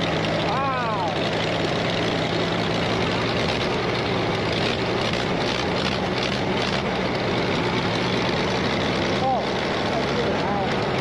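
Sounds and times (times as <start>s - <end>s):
trencher engine running: 0.0s - 11.0s.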